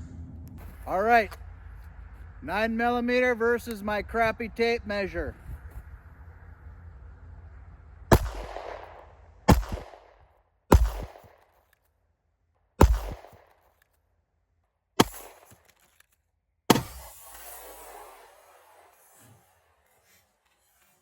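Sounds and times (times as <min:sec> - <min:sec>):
pistol shots with echo: 0:08.1 - 0:11.4, 0:12.8 - 0:13.6, 0:15.0 - 0:15.6.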